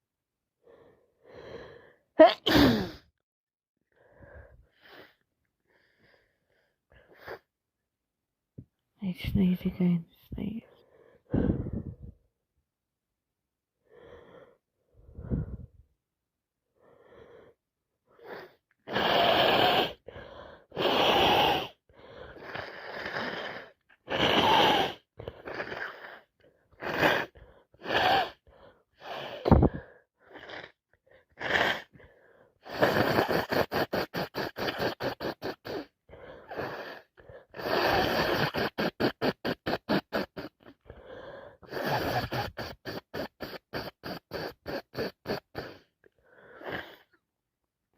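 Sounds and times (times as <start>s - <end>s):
woman sneezing: 2.2s - 3.0s.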